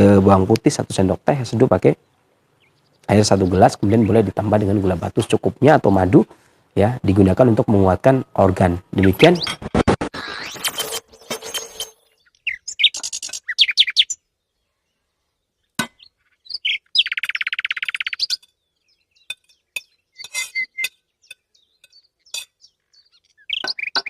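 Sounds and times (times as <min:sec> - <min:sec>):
songbird chirping: 0:00.0 - 0:24.0
bird trill: 0:08.9 - 0:24.0.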